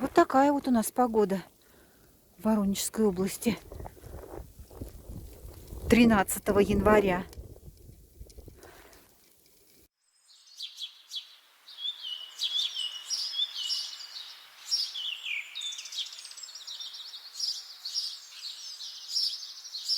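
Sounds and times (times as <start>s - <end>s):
birds chirping and singing: 10.3s - 19.9s.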